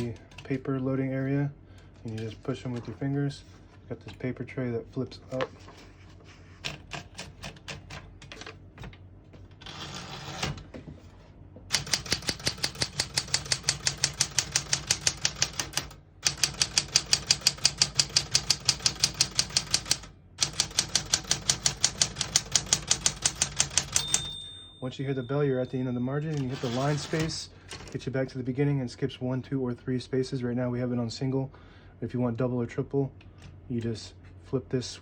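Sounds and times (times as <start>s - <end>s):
typewriter typing clatter: 6.6s - 8.6s, 11.7s - 24.4s, 26.3s - 28.0s.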